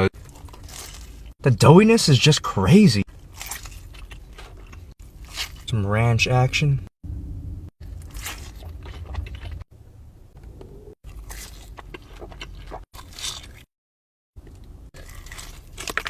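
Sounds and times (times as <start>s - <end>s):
pizza being bitten and chewed: 0.2s - 1.4s, 3.1s - 5.7s, 7.8s - 9.7s, 11.0s - 13.7s, 14.4s - 16.0s.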